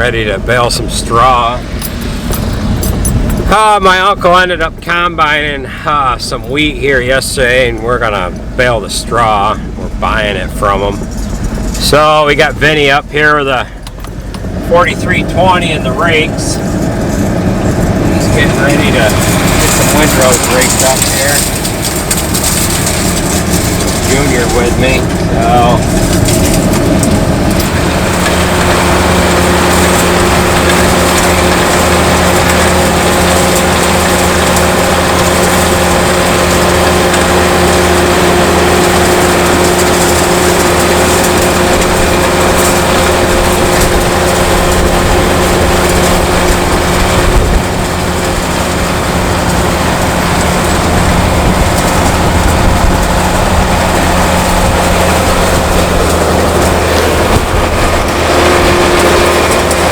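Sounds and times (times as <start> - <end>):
tractor diesel engine running: 0.0 - 59.9.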